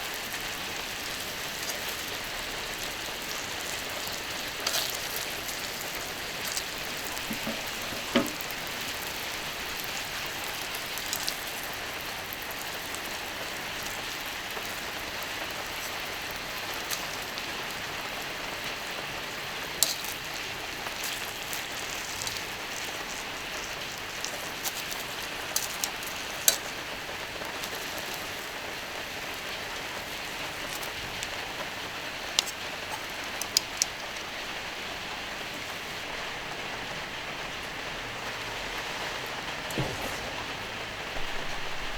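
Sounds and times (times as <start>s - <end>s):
steak sizzling on a griddle: 0.0s - 41.9s
fat popping and spitting: 1.1s - 9.9s, 38.8s - 40.7s.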